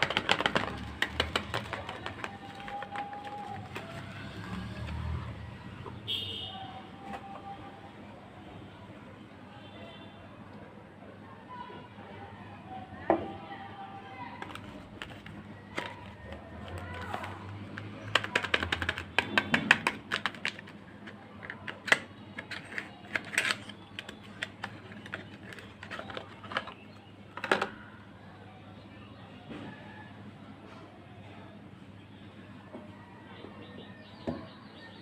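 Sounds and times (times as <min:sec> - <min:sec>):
packaging crackling: 0:00.0 - 0:05.1, 0:14.4 - 0:27.7.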